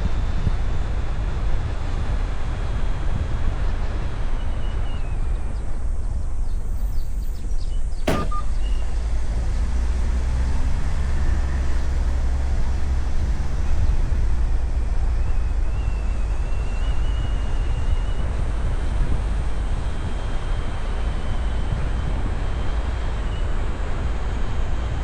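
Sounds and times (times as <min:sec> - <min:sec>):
steady low rumble: 0:00.0 - 0:25.0
wind buffeting microphone: 0:00.0 - 0:25.0
sharp click: 0:07.4 - 0:08.5.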